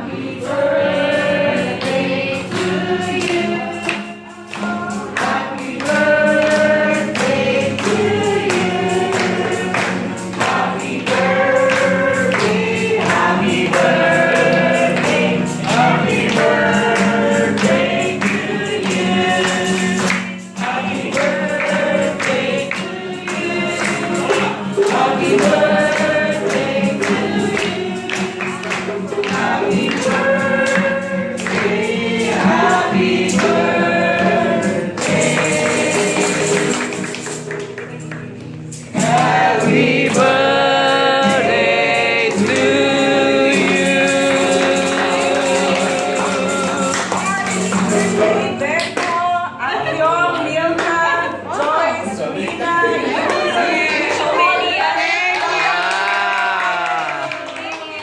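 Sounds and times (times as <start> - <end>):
choir singing gospel: 0.0 - 58.0
band playing a steady beat: 42.4 - 48.6.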